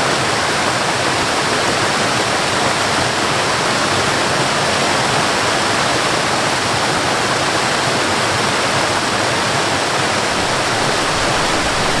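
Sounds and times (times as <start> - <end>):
waterfall pouring: 10.1 - 12.0.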